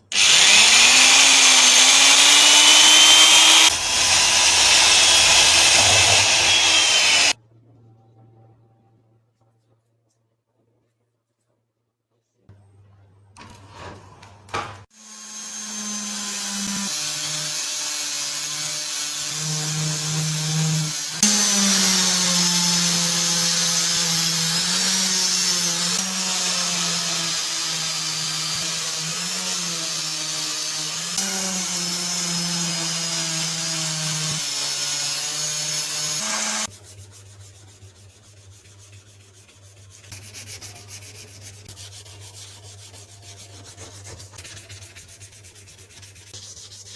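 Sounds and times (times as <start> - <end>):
power tool motor running: 0.1 - 7.4, 15.0 - 36.7
loud hiss: 0.2 - 7.4.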